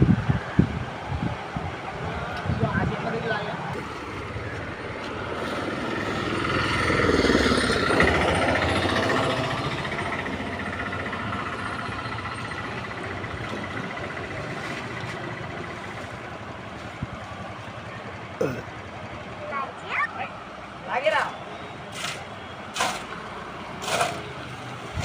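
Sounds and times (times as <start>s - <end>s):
small engine running: 5.5s - 16.1s.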